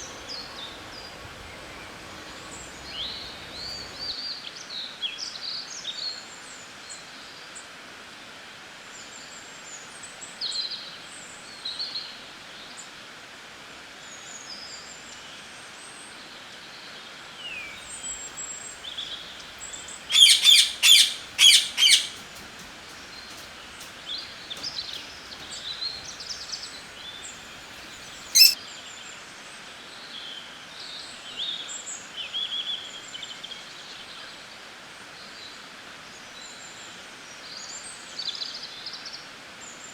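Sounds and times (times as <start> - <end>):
background hiss: 17.5 - 28.6
songbirds chirping and singing: 17.6 - 28.6.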